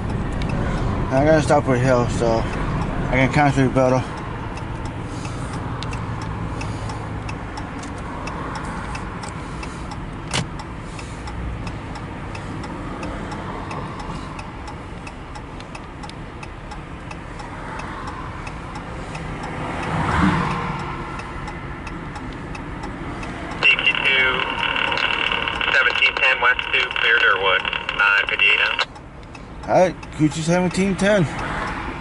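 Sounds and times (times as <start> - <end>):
car cabin driving noise: 0.0 - 32.0
light ticks: 4.1 - 31.8
sharp click: 10.3 - 10.6.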